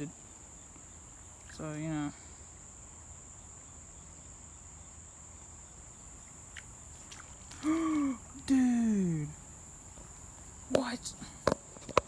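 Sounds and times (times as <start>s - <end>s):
crickets trilling: 0.0s - 12.0s
person speaking: 7.6s - 9.4s, 10.7s - 11.4s.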